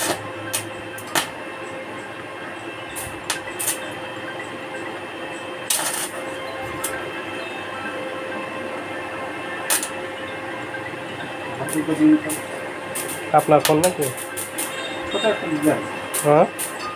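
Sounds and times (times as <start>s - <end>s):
sharp welding snaps: 0.0s - 1.6s, 2.9s - 4.1s, 5.6s - 7.0s, 9.6s - 10.0s, 11.7s - 16.9s
electrical hum: 0.0s - 16.9s
welding arc crackling: 0.0s - 16.9s.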